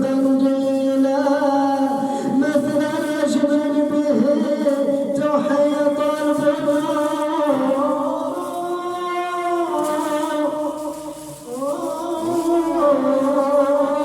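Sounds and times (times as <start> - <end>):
man chanting: 0.0 - 14.0.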